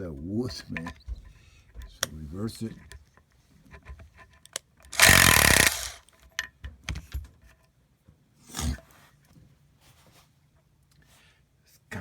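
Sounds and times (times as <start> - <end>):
tool handling clicks and knocks: 0.0 - 7.7
impact screwdriver hammering: 4.9 - 6.0.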